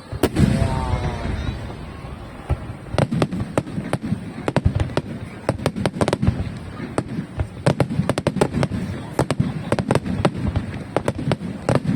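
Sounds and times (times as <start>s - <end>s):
firework boom: 0.0s - 5.5s
fireworks crackling pops: 0.0s - 11.9s.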